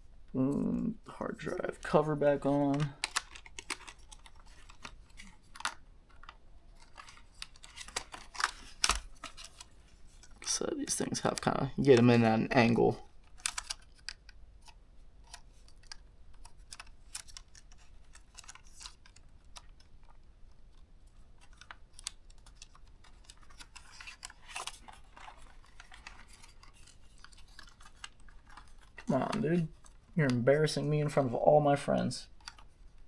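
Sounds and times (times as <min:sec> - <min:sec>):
plastic parts clicking: 0:02.4 - 0:30.2, 0:32.3 - 0:33.0
light scraping of plastic: 0:13.4 - 0:30.2.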